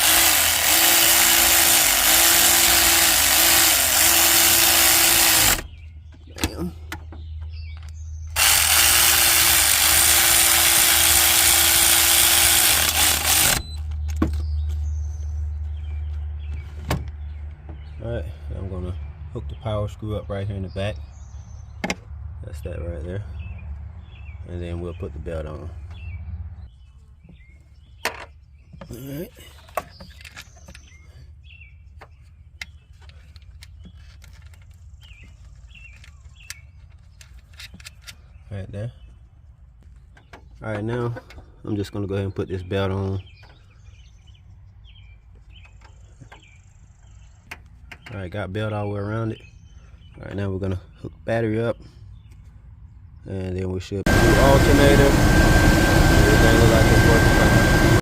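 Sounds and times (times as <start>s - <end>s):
electric drill motor running: 0.0s - 5.6s, 8.4s - 13.9s, 54.1s - 58.0s
bird chirps: 5.6s - 8.4s, 13.6s - 40.6s, 41.4s - 53.3s
steady low rumble: 54.0s - 58.0s.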